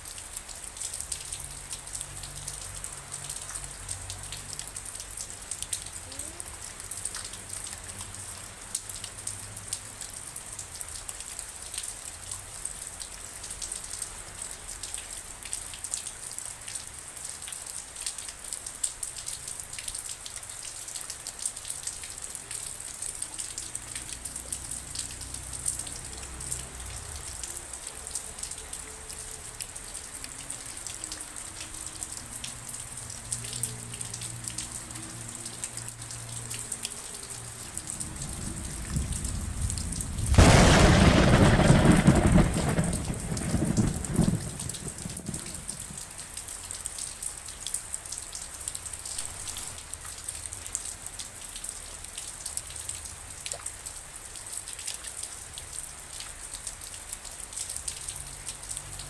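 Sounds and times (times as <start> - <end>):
raindrops ticking on a surface: 0.0 - 59.0
steady rain: 0.0 - 59.0
faint low rumble: 36.5 - 46.2.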